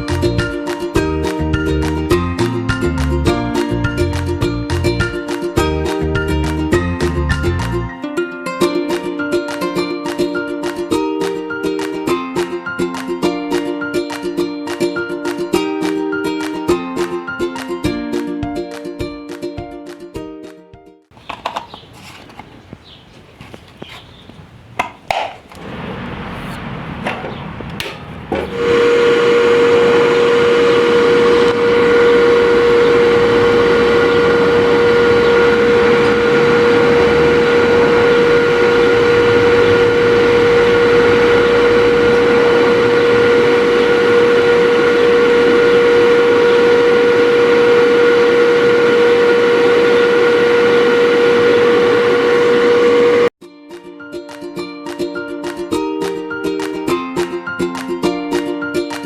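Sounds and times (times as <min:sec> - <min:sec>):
power tool motor whining: 0:25.5 - 0:53.3.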